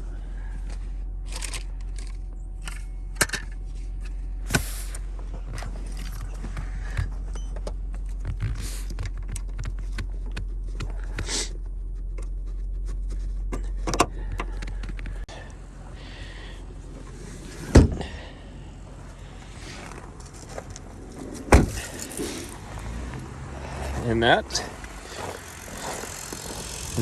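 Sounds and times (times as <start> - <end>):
steady low hum: 0.0 - 27.0
loud thump: 21.5 - 22.0.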